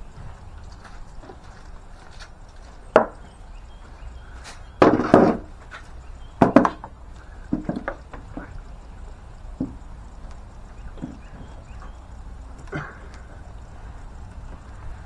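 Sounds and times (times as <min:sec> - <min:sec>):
knocks of hard objects: 0:02.9 - 0:03.3, 0:04.4 - 0:08.6, 0:09.6 - 0:09.8.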